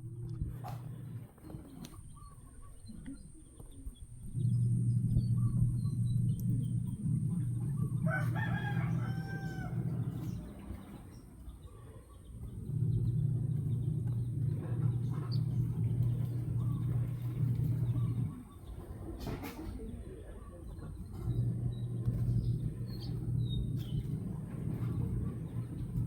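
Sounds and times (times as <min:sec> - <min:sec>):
steady low hum: 0:00.0 - 0:26.0
small birds chirping: 0:00.5 - 0:26.0
rooster crowing: 0:07.6 - 0:10.8.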